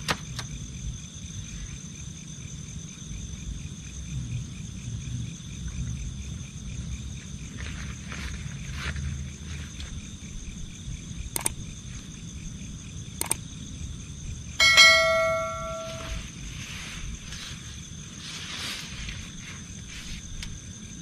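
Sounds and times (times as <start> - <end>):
night insects chirring: 0.0 - 21.0
sharp clicks: 11.4 - 11.6, 13.2 - 13.4
loud metallic bell ring: 14.6 - 16.2.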